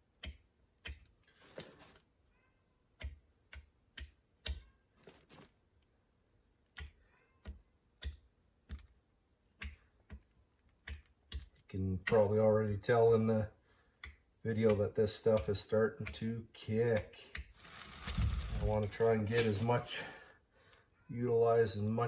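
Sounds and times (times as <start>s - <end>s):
hand tool tapping: 9.6s - 12.3s, 14.0s - 16.3s
hand tool scraping: 17.5s - 20.2s.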